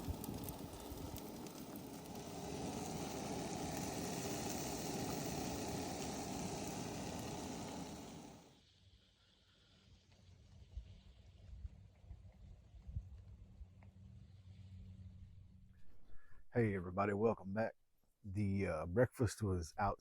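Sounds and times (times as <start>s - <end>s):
sausage sizzling in a frying pan: 0.0s - 8.5s.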